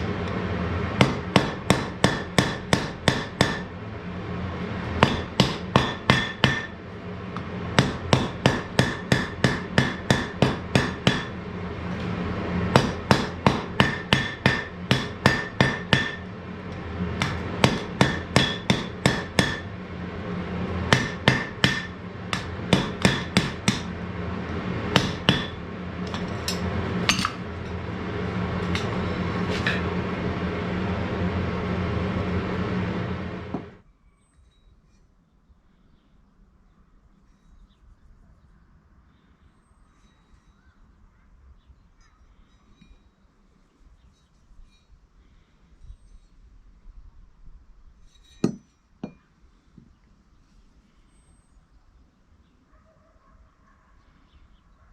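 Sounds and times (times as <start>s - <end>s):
steady hum: 0.0s - 33.8s
hammer striking iron on anvil: 1.0s - 3.8s, 4.9s - 6.8s, 7.4s - 19.8s, 20.9s - 24.0s, 24.9s - 27.8s, 28.6s - 29.9s, 48.3s - 49.3s.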